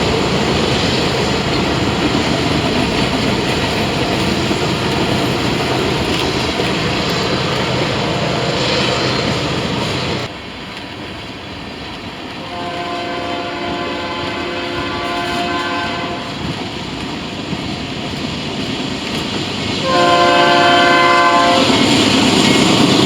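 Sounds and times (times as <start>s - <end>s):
freight train roaring past: 0.0s - 23.0s
locomotive horn: 12.4s - 16.6s, 19.8s - 22.0s.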